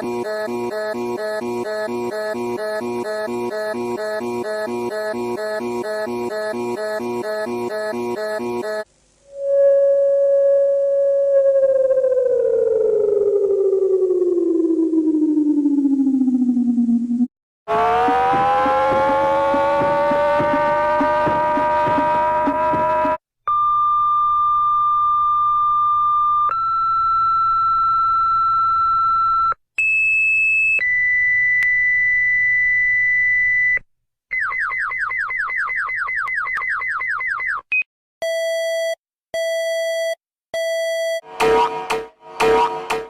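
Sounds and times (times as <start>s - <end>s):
higher steady tone: 9.2s - 13.2s
long steady alarm beep: 38.2s - 41.8s.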